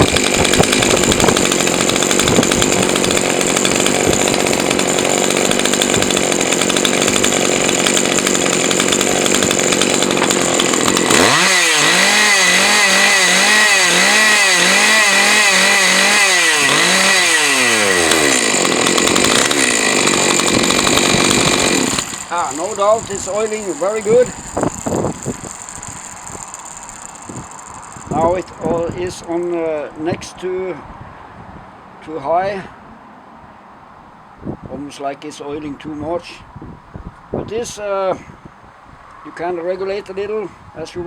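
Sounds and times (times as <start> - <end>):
chainsaw revving: 0.0 - 29.6.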